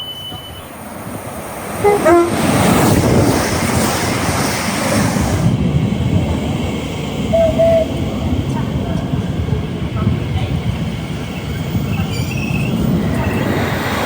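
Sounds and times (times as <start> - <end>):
two-tone train horn: 0.0 - 0.7, 1.8 - 2.8, 7.3 - 7.9
train rushing past: 0.0 - 14.0.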